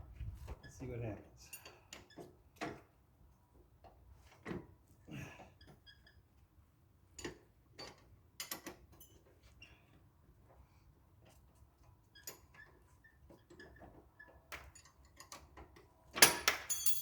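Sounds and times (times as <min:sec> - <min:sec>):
wrenches clinking on metal: 0:14.6 - 0:17.0.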